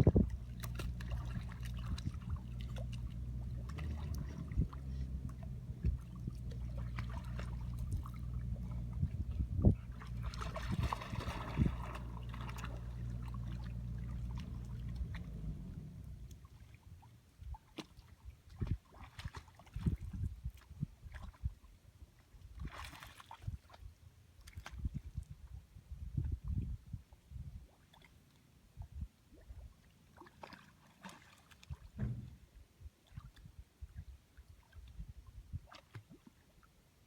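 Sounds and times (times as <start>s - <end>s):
low engine hum: 0.0s - 17.6s, 31.9s - 32.6s
water splashing: 0.0s - 20.0s, 30.2s - 32.4s.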